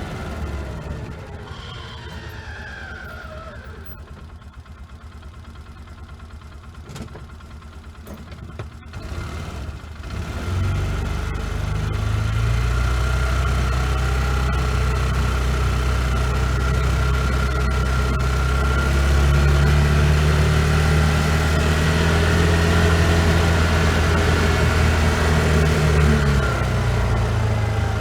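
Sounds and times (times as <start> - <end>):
vehicle engine running: 0.0 - 28.0
constant whine: 13.2 - 28.0.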